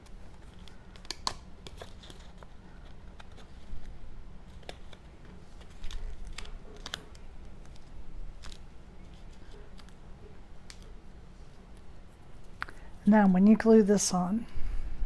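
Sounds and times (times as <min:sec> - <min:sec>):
paper rustling: 0:00.0 - 0:10.0
low steady hum: 0:00.0 - 0:15.0.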